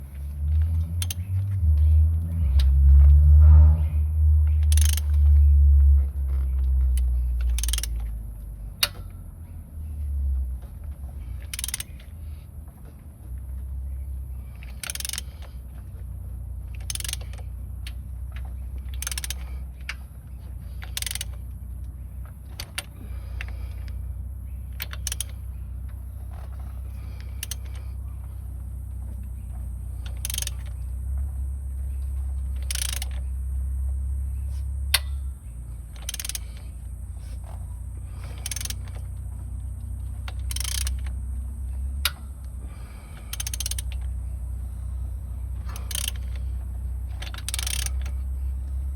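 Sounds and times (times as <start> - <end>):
engine clicking or knocking: 0.0 - 9.0, 34.7 - 41.2
diesel engine droning: 0.0 - 48.9.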